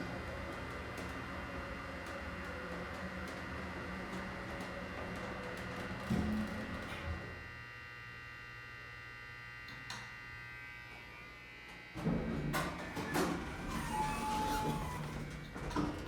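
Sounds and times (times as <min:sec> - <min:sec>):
steady electrical buzz: 0:00.0 - 0:15.9
elevator clatter: 0:12.2 - 0:16.0.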